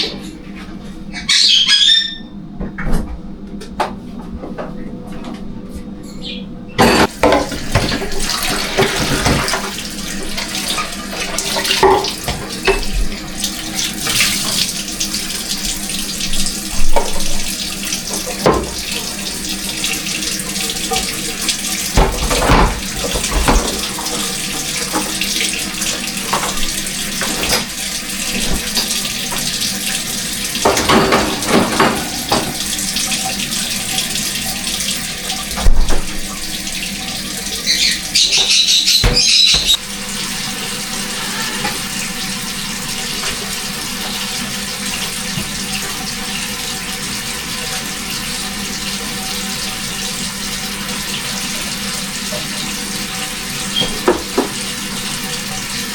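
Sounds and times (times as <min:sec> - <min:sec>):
dishes knocking and clattering: 0:06.8 - 0:09.7, 0:11.4 - 0:13.0, 0:18.4 - 0:18.9, 0:21.9 - 0:25.2, 0:30.6 - 0:32.7, 0:38.2 - 0:39.8, 0:53.8 - 0:54.6
tap running into sink: 0:06.8 - 0:39.8, 0:41.4 - 0:46.4, 0:50.7 - 0:55.7.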